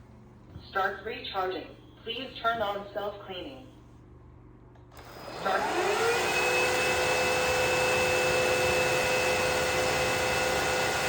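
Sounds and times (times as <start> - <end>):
vacuum motor whine: 4.9 - 11.0.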